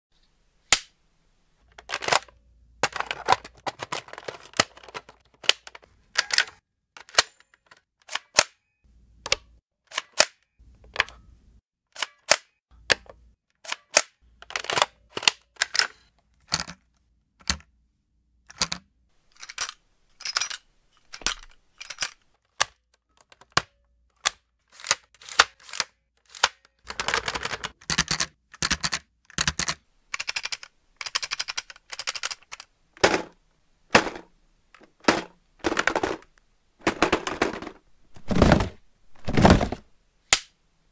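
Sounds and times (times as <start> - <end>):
sharp mechanical clicks: 24.2 - 32.7.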